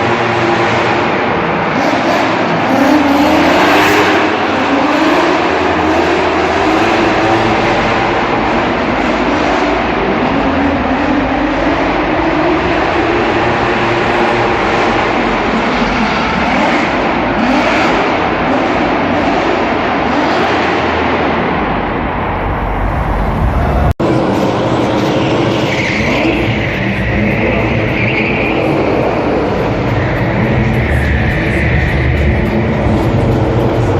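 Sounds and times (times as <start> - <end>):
dense wash of noise: 0.0 - 25.7
car engines revving hard: 0.0 - 33.9.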